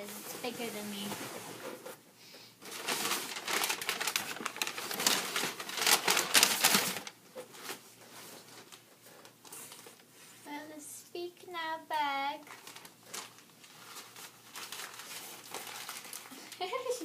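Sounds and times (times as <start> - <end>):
cardboard packaging rustling: 2.6 - 10.4, 12.4 - 17.0.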